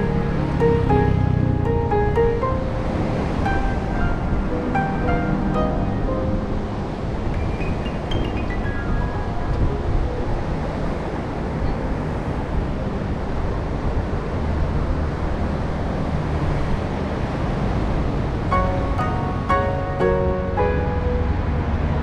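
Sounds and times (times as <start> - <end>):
music: 0.0 - 11.0, 17.9 - 22.0
road traffic: 0.0 - 22.0
wind: 0.0 - 22.0.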